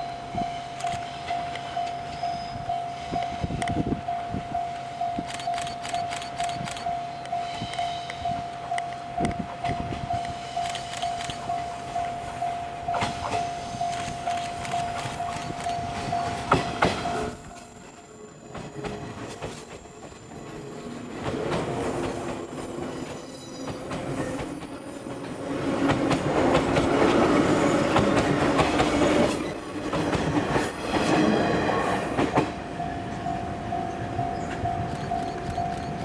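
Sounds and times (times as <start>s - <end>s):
level crossing warning bell: 0.0s - 20.7s, 32.1s - 36.0s
train wheels clattering over rail joints: 12.3s - 17.5s, 21.1s - 32.6s.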